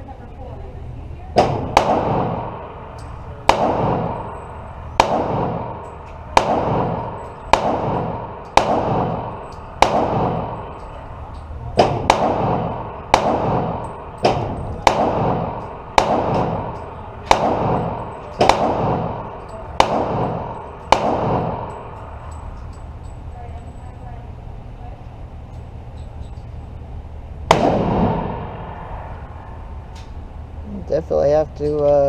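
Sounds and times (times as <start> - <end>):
gunshots echoing: 1.4 - 23.1, 27.4 - 30.3.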